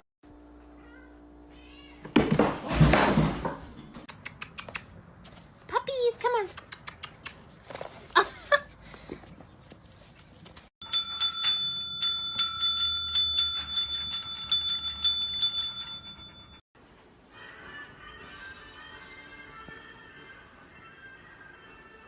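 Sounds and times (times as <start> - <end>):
metallic bell ringing rapidly: 10.8 - 16.6.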